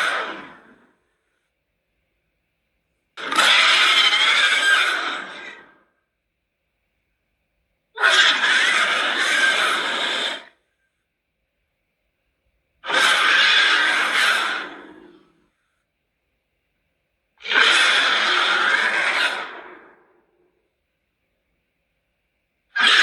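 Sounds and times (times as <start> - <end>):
hoarse breathy creature calls: 0.0 - 0.9, 8.0 - 10.6, 12.8 - 15.5, 17.4 - 20.2, 22.8 - 23.0.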